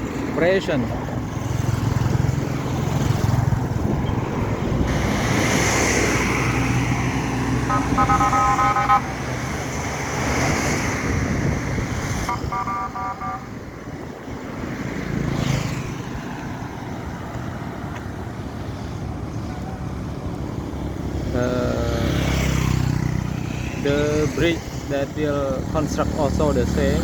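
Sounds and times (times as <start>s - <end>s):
road traffic rumble: 0.0s - 27.0s
repeated car horn beeps: 7.6s - 9.2s, 12.3s - 13.6s.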